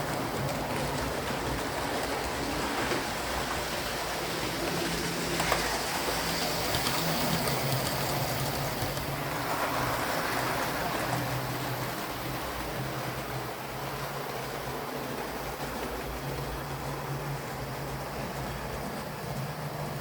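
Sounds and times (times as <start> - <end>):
model train running on track: 0.0 - 20.0
model train motor humming: 1.4 - 20.0.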